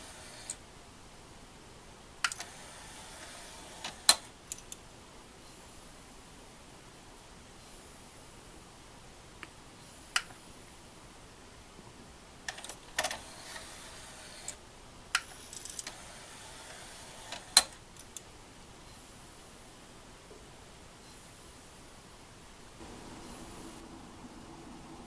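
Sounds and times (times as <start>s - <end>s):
disc player clicks and clacks: 0.0s - 0.6s, 2.2s - 4.9s, 12.4s - 14.6s, 15.2s - 18.3s.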